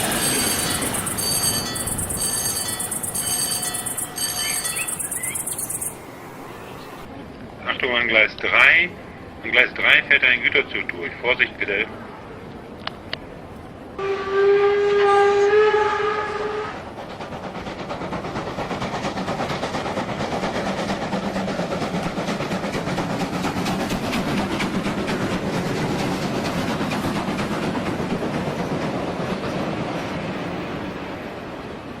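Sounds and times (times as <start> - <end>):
train wheels clattering: 0.0 - 6.1, 16.8 - 31.3
train horn: 14.0 - 17.0.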